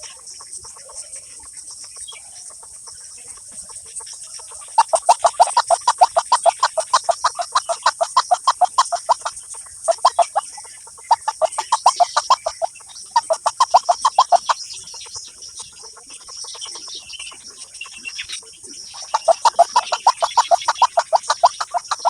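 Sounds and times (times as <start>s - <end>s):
bird clucking call: 1.8s - 22.0s.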